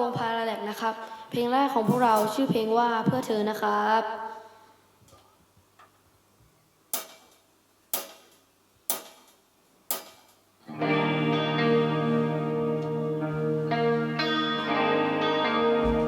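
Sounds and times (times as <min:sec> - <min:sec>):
distorted electric guitar chords: 0:10.7 - 0:16.0.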